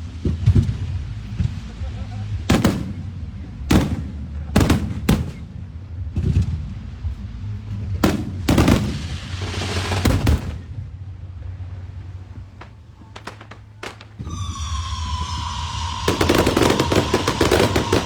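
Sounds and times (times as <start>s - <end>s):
fireworks hissing: 0.0s - 5.7s, 8.0s - 10.8s, 12.3s - 18.0s
low rumble: 0.0s - 18.0s
fireworks bangs: 2.3s - 6.6s, 8.0s - 10.8s, 12.4s - 18.0s.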